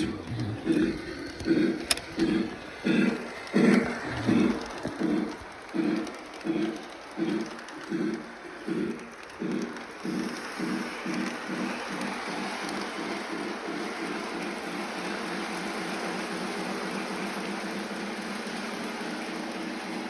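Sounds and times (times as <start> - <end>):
model steam locomotive chuffing: 0.0 - 20.0
steady hiss: 10.0 - 12.4.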